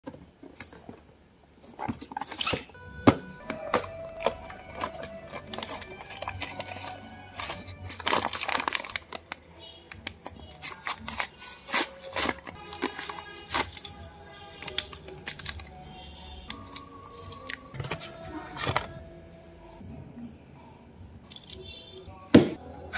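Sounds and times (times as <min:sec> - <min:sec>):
background music: 0:02.8 - 0:22.9
packaging clicks and rattles: 0:03.5 - 0:18.0.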